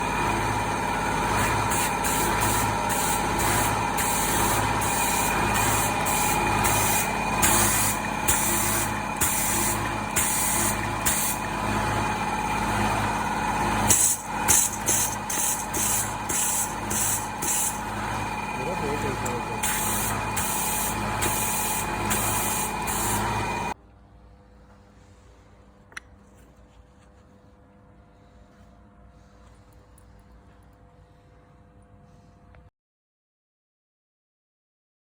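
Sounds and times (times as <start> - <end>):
forklift engine hum: 0.0 - 23.8.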